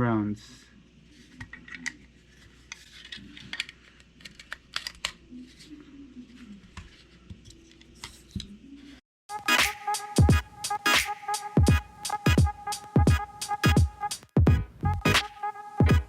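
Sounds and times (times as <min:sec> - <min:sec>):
music with a beat: 0:09.3 - 0:16.0.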